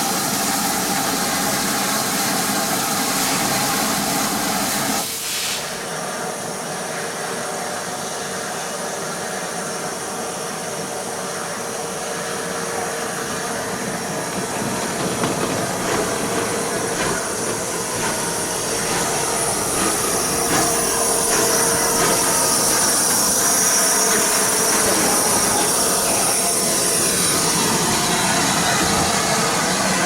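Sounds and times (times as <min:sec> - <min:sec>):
train wheels clicking over rail joints: 0:12.8 - 0:30.0.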